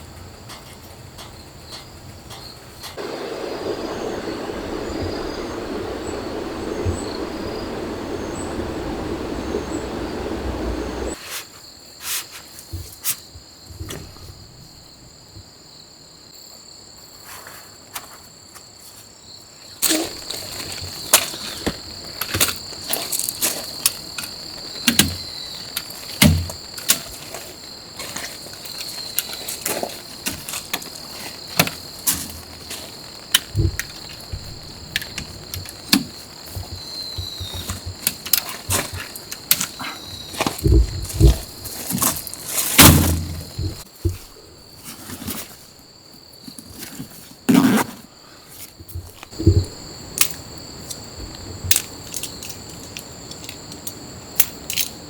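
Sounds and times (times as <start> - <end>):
insects chirring: 1.3 - 17.3, 18.0 - 55.0
steady rushing noise: 3.0 - 11.2.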